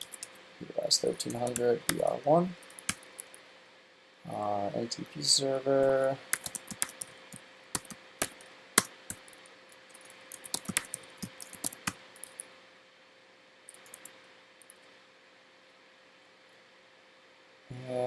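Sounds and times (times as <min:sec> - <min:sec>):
keyboard typing clicks: 0:00.0 - 0:00.4, 0:01.1 - 0:03.4, 0:06.3 - 0:07.2, 0:07.8 - 0:09.4, 0:10.0 - 0:12.4, 0:13.7 - 0:14.2.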